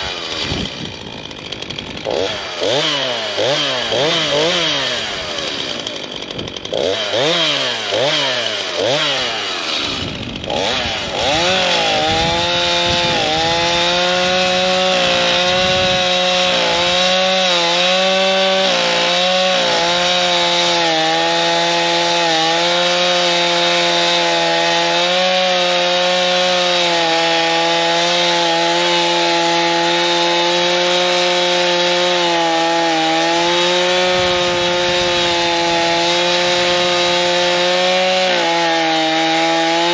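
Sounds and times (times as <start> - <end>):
chainsaw revving and cutting wood: 0.0 - 39.9.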